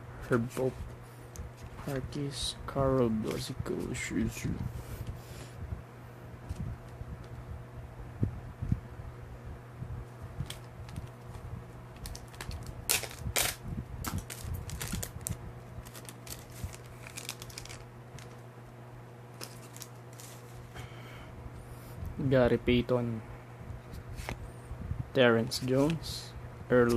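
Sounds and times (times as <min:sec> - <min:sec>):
cards rustling and clicking: 0:03.0 - 0:04.0, 0:10.4 - 0:18.4, 0:19.4 - 0:20.6
wrapper crinkling and tearing: 0:12.0 - 0:18.4, 0:19.4 - 0:20.5.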